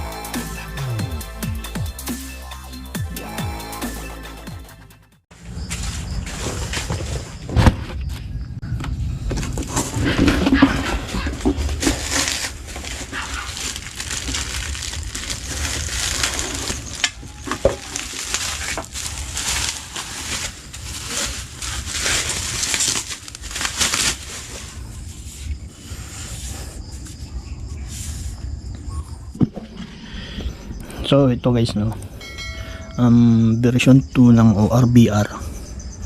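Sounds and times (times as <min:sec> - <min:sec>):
crinkling and rustling: 0:05.6 - 0:08.3, 0:08.9 - 0:25.5.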